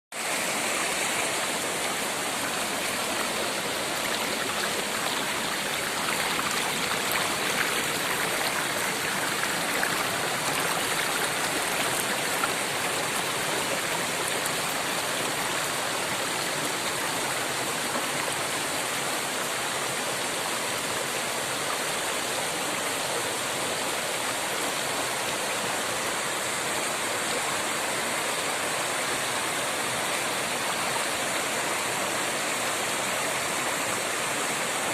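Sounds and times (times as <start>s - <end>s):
waterfall pouring and splashing: 0.1s - 34.9s.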